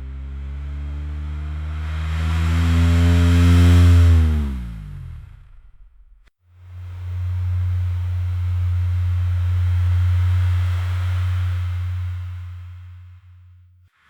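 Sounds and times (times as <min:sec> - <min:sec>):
low engine hum: 0:00.0 - 0:13.2.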